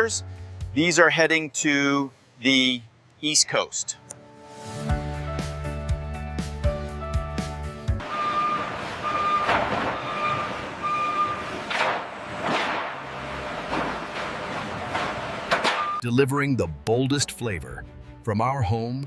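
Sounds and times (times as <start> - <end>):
truck reversing alarm beeping: 8.0 - 12.4, 15.8 - 16.0
vehicle noise: 8.0 - 15.9.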